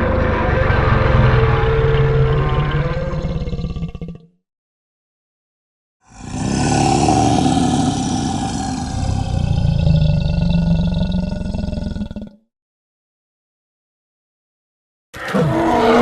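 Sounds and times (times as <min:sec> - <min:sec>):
deep rumbling monster roar: 0:00.0 - 0:04.4, 0:06.0 - 0:12.4, 0:15.2 - 0:16.0.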